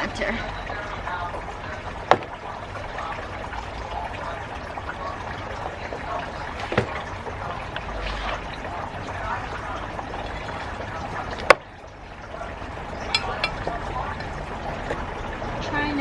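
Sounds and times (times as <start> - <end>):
potting soil trickling: 0.0 - 16.0
sharp knocks: 2.1 - 2.4.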